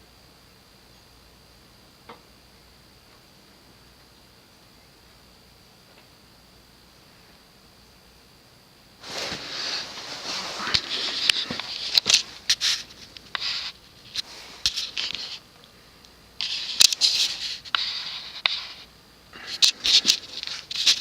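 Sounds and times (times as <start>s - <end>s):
rustling and crackling handling noise: 9.0s - 21.0s.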